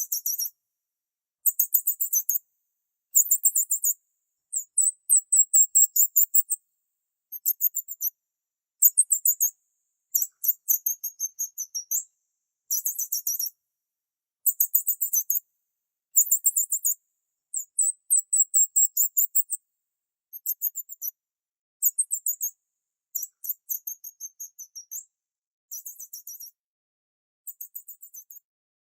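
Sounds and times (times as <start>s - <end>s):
bird chirping: 0.0s - 0.5s, 3.2s - 6.6s, 10.1s - 12.1s, 16.2s - 19.6s, 23.1s - 25.1s.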